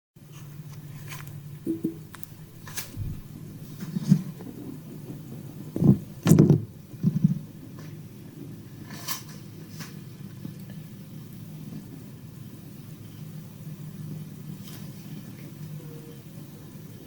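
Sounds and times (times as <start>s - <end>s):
dull thumps and knocks: 1.6s - 2.2s, 5.7s - 7.4s.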